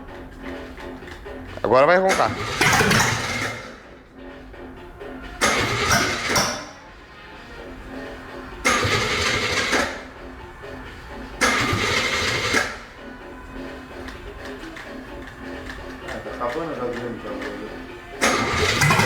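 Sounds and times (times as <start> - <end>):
engine firing in loud bursts: 1.7 - 4.0, 5.4 - 6.8, 8.6 - 10.2, 11.2 - 13.0, 16.0 - 19.0.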